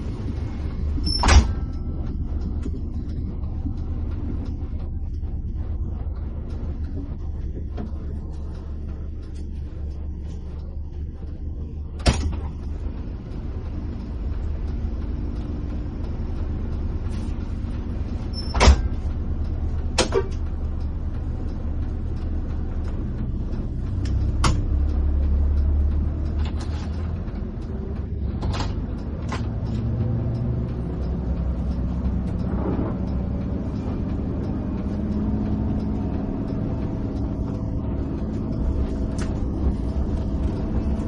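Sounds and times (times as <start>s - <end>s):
bus engine drone: 0.0s - 41.0s
sharp knocks and clicks: 19.8s - 20.6s, 23.9s - 25.0s.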